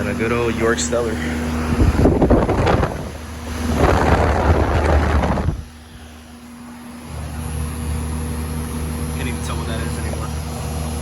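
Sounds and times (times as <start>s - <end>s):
air conditioner electrical hum: 0.0s - 11.0s
wind gusts on microphone: 1.6s - 5.8s.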